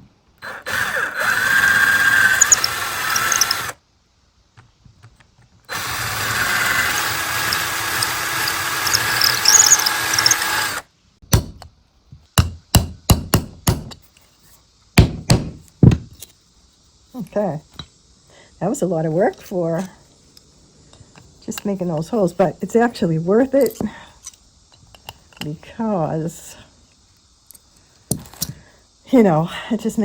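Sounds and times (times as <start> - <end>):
power drill boring into wood: 0.4 - 3.8, 5.7 - 10.8.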